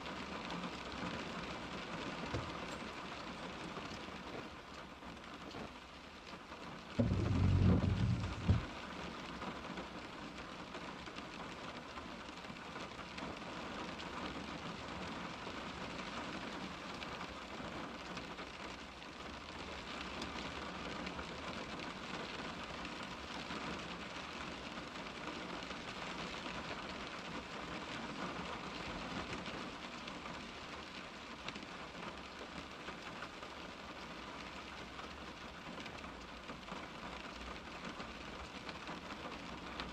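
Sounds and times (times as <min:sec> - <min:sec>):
rain pattering on car window: 0:00.0 - 0:39.9
low rumble: 0:07.0 - 0:08.7.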